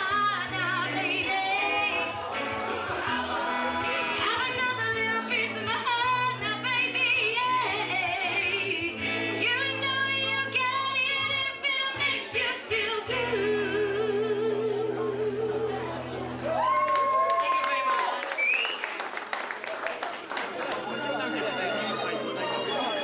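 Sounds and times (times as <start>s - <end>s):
woman singing with vibrato: 0.0s - 16.3s
instrumental backing chords and bass: 0.0s - 16.6s.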